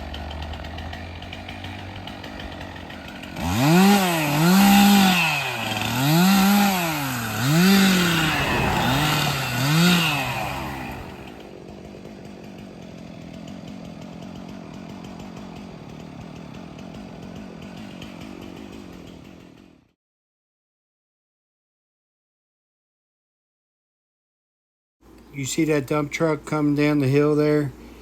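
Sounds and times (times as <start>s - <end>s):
chainsaw revving and idling: 0.0s - 20.0s.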